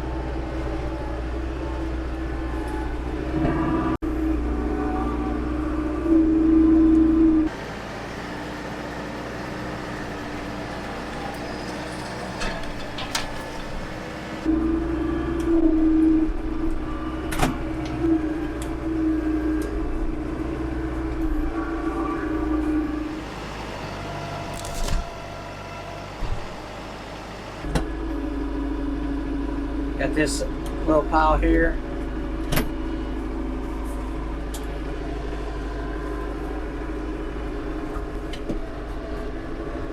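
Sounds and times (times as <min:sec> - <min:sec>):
tractor engine droning: 0:00.0 - 0:39.9
sharp knocks and clanks: 0:12.2 - 0:14.1.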